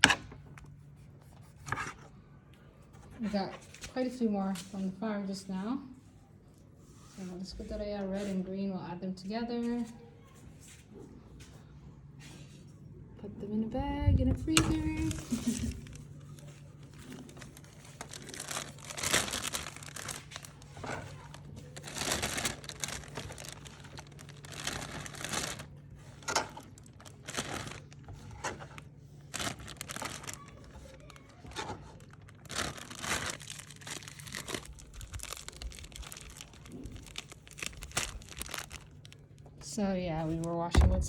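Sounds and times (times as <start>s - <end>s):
steady low hum: 10.8s - 31.2s
plastic bag crinkling: 14.8s - 41.0s.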